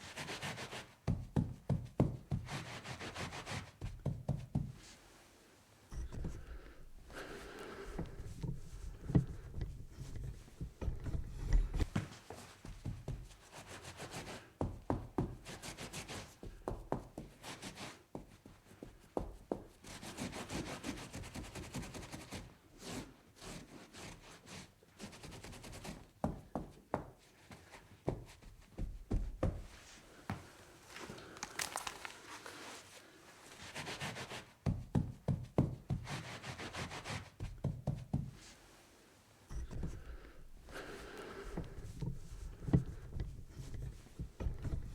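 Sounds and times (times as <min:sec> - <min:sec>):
scrubbing a tabletop: 0:02.4 - 0:03.9, 0:36.0 - 0:37.4.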